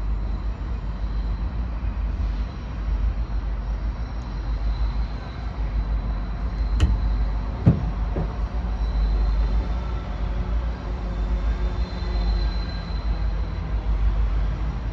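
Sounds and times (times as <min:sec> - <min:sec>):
freight train rumbling: 0:06.3 - 0:08.7
sharp metal clanks: 0:06.4 - 0:08.5.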